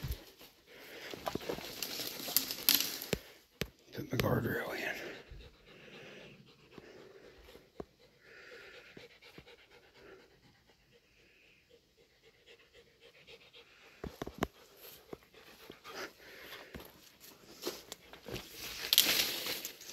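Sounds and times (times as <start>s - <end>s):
faint panting: 4.6s - 18.6s.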